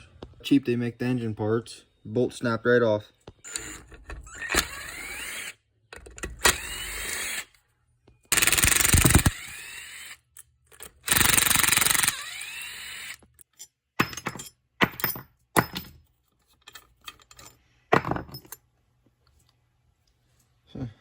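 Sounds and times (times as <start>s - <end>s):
electric power driver whining: 3.4s - 7.6s, 8.3s - 13.3s.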